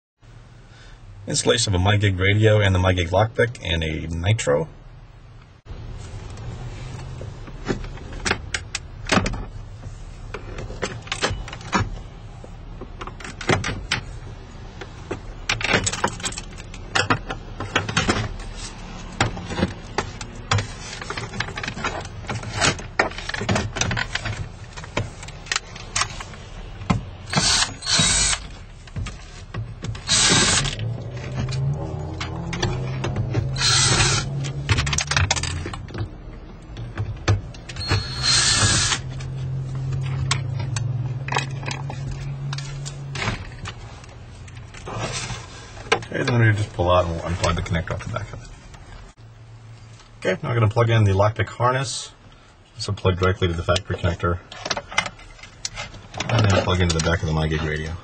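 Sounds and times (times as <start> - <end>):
power screwdriver bursts: 27.3 - 28.5, 30.0 - 30.8, 33.5 - 34.4, 37.8 - 39.0.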